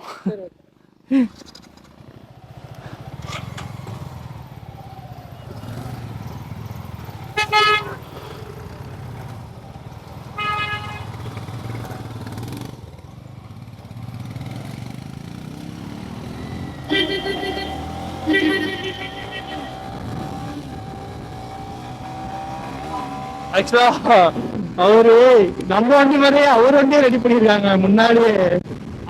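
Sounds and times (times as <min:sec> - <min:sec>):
motorcycle engine running: 0:01.6 - 0:24.8
horn honking: 0:07.2 - 0:08.7, 0:10.2 - 0:11.7, 0:16.6 - 0:20.5.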